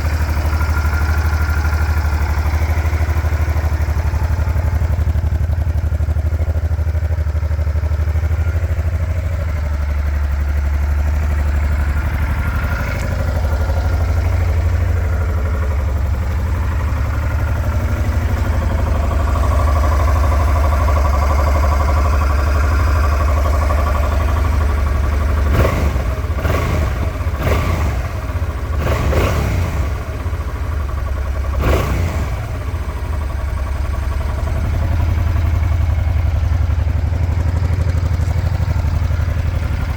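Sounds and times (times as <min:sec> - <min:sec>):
motorcycle engine idling: 0:00.0 - 0:39.9
engine throttle blips: 0:10.1 - 0:39.9.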